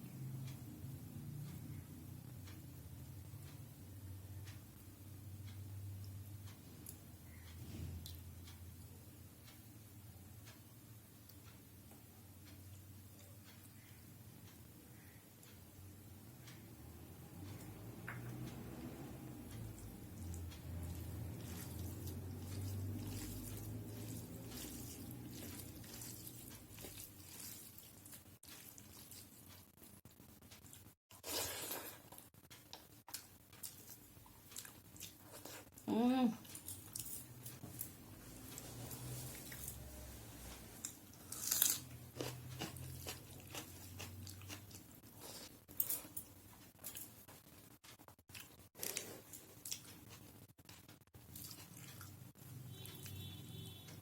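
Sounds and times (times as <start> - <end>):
soft chewing and mouth smacks: 6.0 - 8.6, 19.5 - 37.6, 40.5 - 53.4
loud crunchy bite: 41.3 - 43.7.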